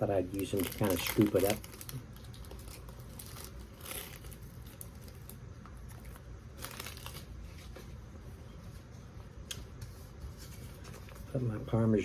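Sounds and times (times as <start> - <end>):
plastic wrapper tearing and crinkling: 0.1 - 7.5.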